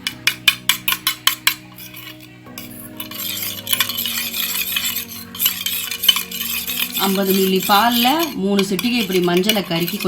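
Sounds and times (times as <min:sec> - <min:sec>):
spoon clinking against cup: 0:00.0 - 0:10.0
spoon scraping stir: 0:00.0 - 0:10.0.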